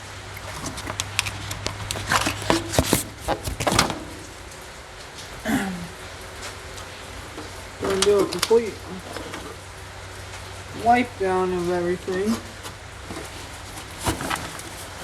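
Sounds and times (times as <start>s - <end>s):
hand tools and metal parts clattering: 0.0s - 3.9s, 13.4s - 15.0s.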